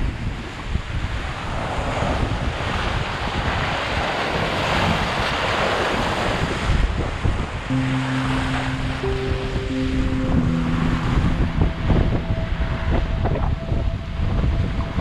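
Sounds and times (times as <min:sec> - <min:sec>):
wind buffeting microphone: 0:11.4 - 0:15.0.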